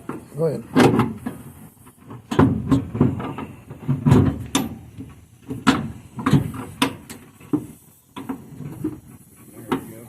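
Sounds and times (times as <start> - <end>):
metallic knocks and clanks: 2.1 - 9.0.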